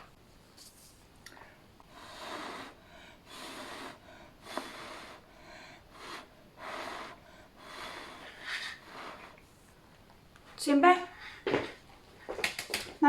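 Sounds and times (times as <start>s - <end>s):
person blowing out short puffs: 2.0s - 5.2s, 5.9s - 9.4s.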